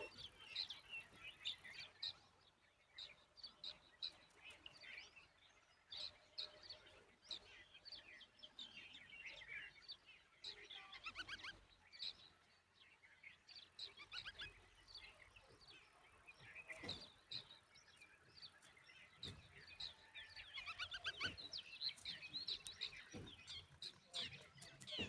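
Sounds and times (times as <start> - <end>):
small birds chirping: 0.0 - 25.0.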